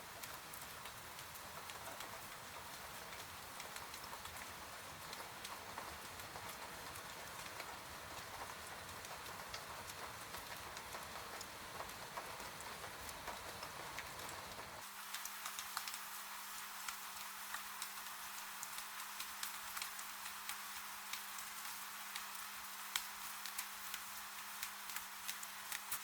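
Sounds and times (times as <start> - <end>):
rain drops pattering: 0.0 - 26.0.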